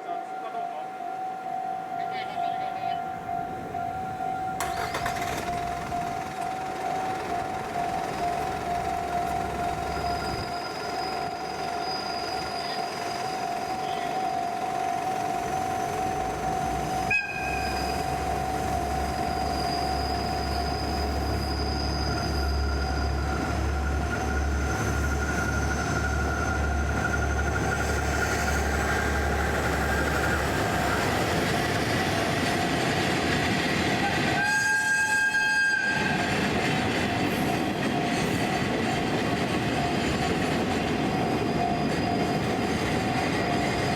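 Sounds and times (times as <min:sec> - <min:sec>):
deep train rumble: 0:01.4 - 0:43.9
train wheels squealing: 0:07.1 - 0:43.9
train horn blast: 0:17.0 - 0:18.1, 0:34.1 - 0:36.2.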